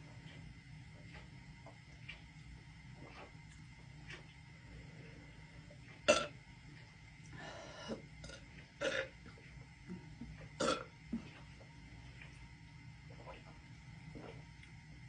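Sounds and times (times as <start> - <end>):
woman burping: 6.1 - 6.3, 8.2 - 9.1, 10.6 - 10.9.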